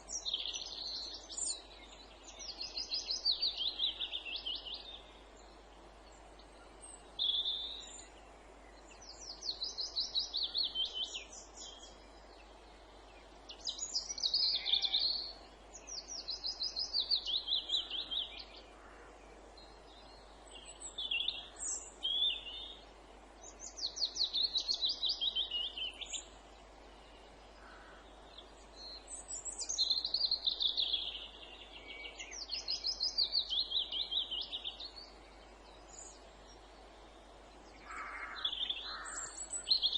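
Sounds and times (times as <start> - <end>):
faint steady hiss: 0.0 - 39.9
songbirds trilling: 23.4 - 39.9.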